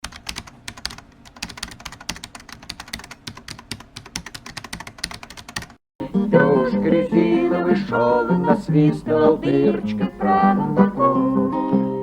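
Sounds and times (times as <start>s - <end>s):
rapid clicking and tapping: 0.0s - 5.8s.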